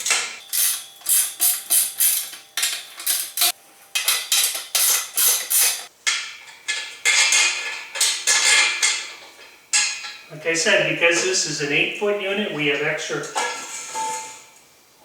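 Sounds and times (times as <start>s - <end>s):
ratchet wrench ratcheting: 0.5s - 3.5s, 4.3s - 5.9s.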